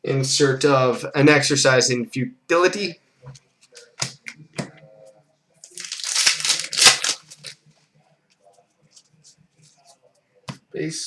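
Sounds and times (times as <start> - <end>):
trading cards rustling: 5.6 - 7.6.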